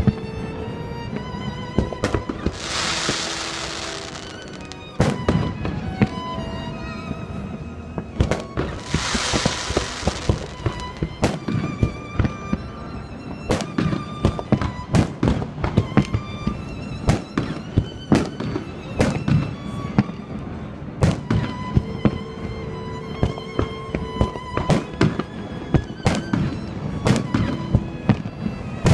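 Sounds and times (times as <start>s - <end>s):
string music: 0.0s - 28.9s
fireworks banging: 1.8s - 6.2s, 8.0s - 16.2s, 21.0s - 22.2s, 23.2s - 28.9s
loud hissing crackle: 2.2s - 6.2s, 8.4s - 13.2s.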